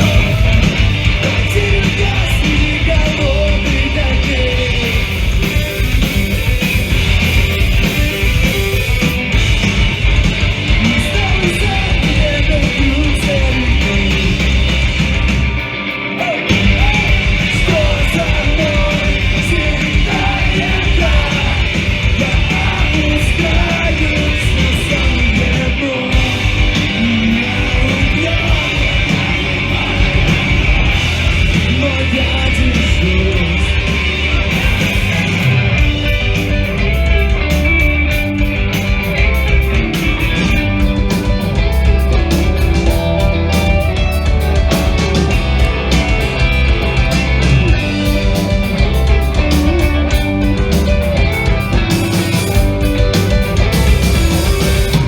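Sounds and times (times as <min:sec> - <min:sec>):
sung and shouted vocals: 0:00.0 - 0:05.2, 0:16.1 - 0:35.5
live punk rock band: 0:00.0 - 0:55.0.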